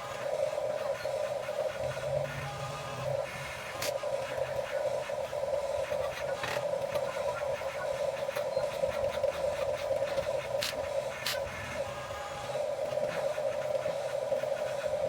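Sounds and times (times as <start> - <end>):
small electric motors whirring: 10.0 - 14.0.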